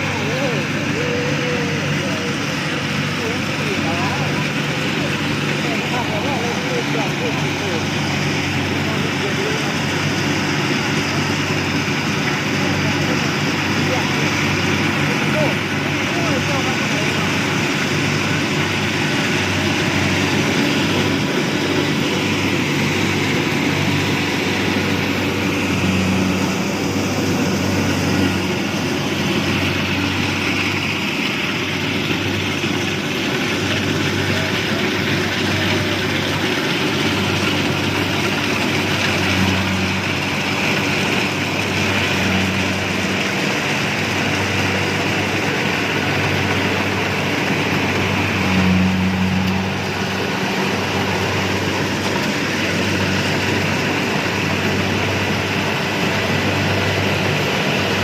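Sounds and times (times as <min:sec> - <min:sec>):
low engine drone: 0:00.0 - 0:58.0.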